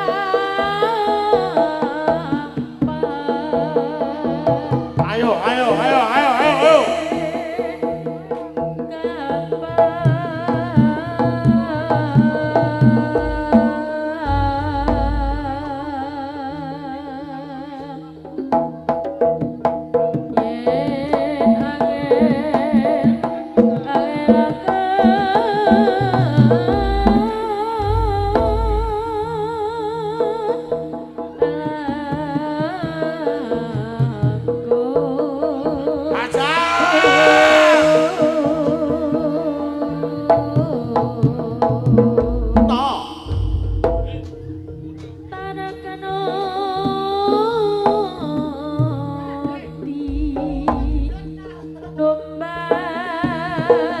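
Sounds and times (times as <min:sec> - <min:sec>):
hand drums: 0:00.0 - 0:17.2, 0:18.2 - 0:52.1
deep gong booming: 0:14.3 - 0:15.9
wavering vibrato melody: 0:36.2 - 0:39.7.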